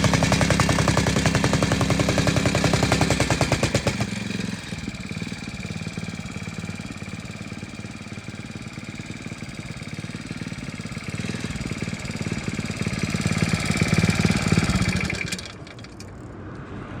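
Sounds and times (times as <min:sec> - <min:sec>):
petrol engine running: 0:00.0 - 0:16.5.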